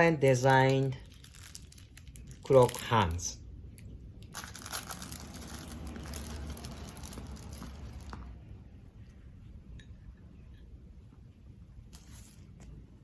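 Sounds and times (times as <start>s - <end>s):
plastic packaging rustling: 0.4s - 3.2s, 4.3s - 8.4s.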